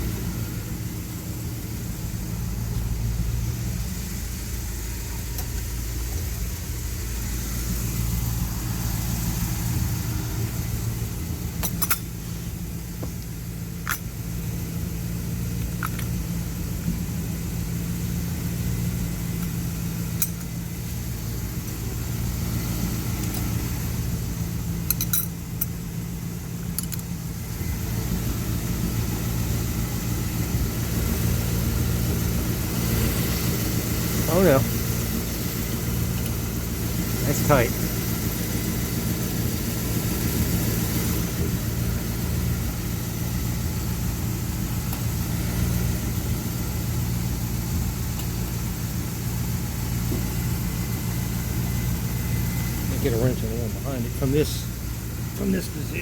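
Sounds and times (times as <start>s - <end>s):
pickup engine idling: 0.0s - 56.0s
wrench clicks: 11.6s - 12.1s.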